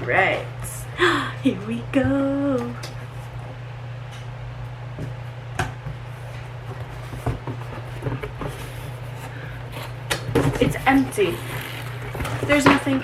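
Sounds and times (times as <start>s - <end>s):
cardboard flaps rustling: 6.6s - 12.8s.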